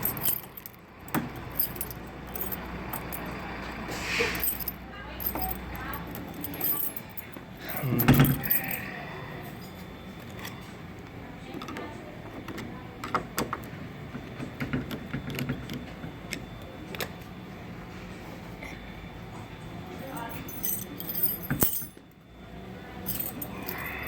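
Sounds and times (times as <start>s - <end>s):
metal parts clicking and clinking: 0.0s - 3.4s, 4.3s - 8.9s, 20.0s - 22.1s, 23.0s - 24.0s.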